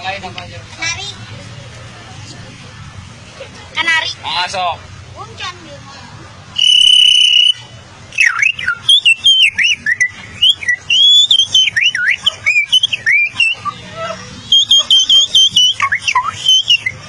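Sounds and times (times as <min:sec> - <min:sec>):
child whistling bird song: 0:06.6 - 0:13.9, 0:14.5 - 0:17.0.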